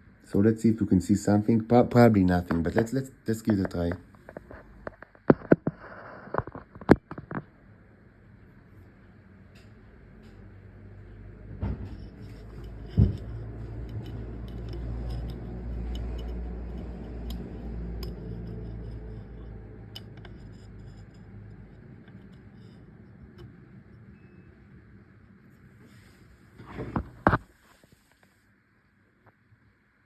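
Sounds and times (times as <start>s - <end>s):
low rubbing rumble: 11.0s - 23.9s.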